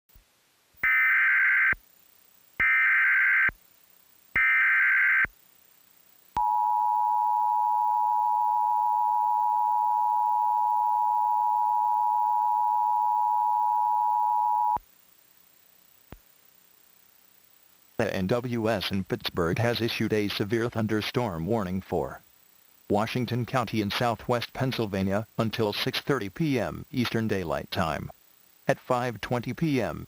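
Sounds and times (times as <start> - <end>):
two-tone attention signal: 6.4 - 14.8.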